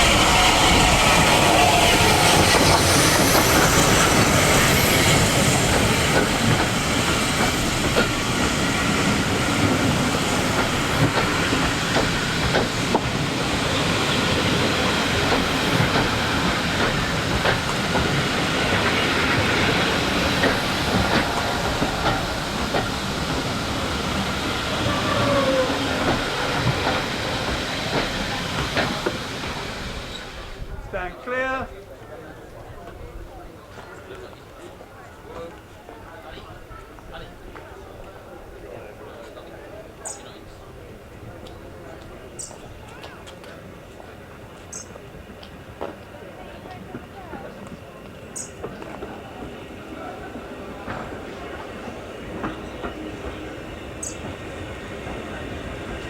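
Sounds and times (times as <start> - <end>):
train wheels clicking over rail joints: 0.0 - 30.7, 41.3 - 56.0
train rumble: 0.0 - 56.0
wheel squeal: 24.0 - 27.4.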